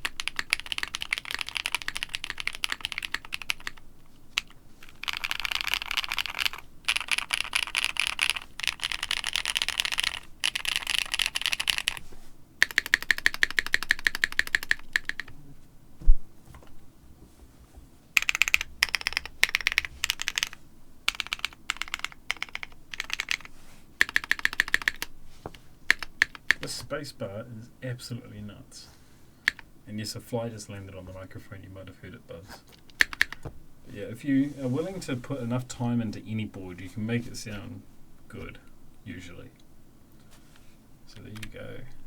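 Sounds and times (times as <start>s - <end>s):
typing on mechanical keyboard: 0.0s - 12.0s, 12.6s - 15.3s, 18.2s - 25.1s, 25.9s - 26.7s, 29.4s - 29.6s, 32.7s - 33.5s.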